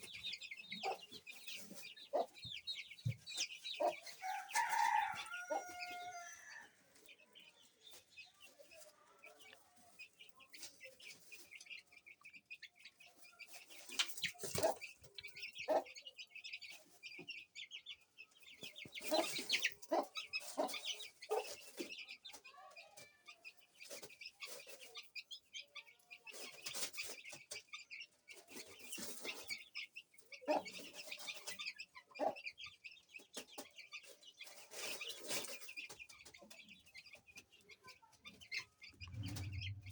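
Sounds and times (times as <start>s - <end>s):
hen clucking: 0.0s - 6.6s, 13.8s - 16.2s, 18.6s - 22.0s
chicks peeping: 0.0s - 39.9s.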